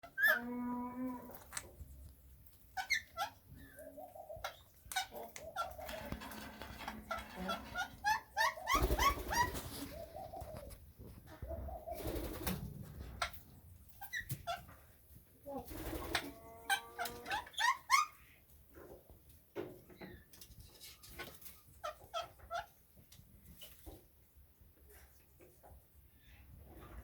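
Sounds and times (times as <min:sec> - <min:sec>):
caged birds chirping: 0:01.4 - 0:15.0, 0:15.7 - 0:24.0
rustling noises: 0:08.8 - 0:15.4.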